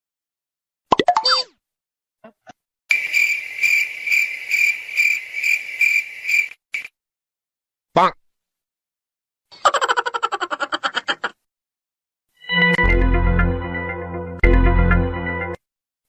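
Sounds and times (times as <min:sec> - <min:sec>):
crickets chirping: 0:02.9 - 0:06.9.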